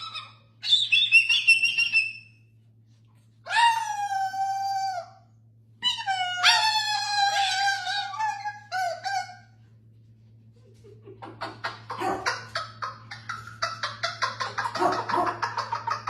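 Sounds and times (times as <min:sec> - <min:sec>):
parrot howling: 0:00.0 - 0:02.3, 0:03.4 - 0:09.6, 0:11.5 - 0:16.0.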